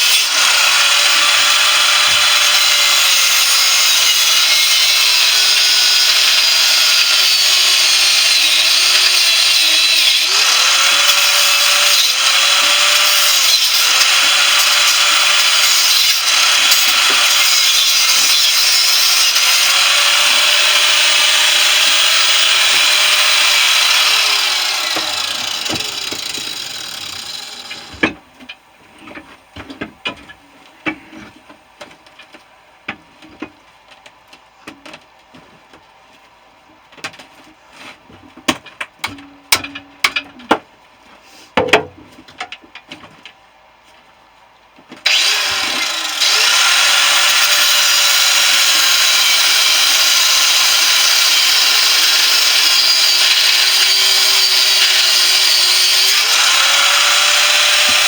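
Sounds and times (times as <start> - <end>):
power tool cutting metal: 0.0 - 28.0, 45.0 - 58.0.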